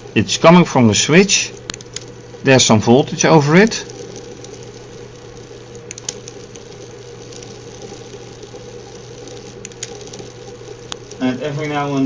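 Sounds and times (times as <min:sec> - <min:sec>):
low mechanical hum: 0:00.0 - 0:12.0
faint clicks: 0:01.5 - 0:02.2, 0:03.8 - 0:11.2.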